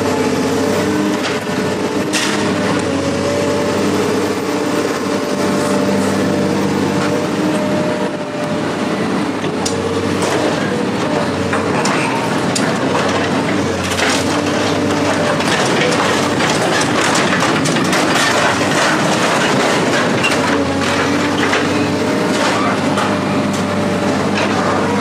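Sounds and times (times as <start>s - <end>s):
engine running: 0.0s - 25.0s
metal crushing and cracking: 11.4s - 25.0s.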